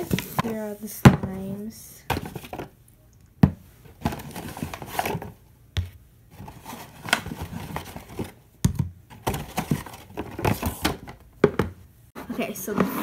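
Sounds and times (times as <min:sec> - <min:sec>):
plastic containers knocking: 0:08.6 - 0:11.8.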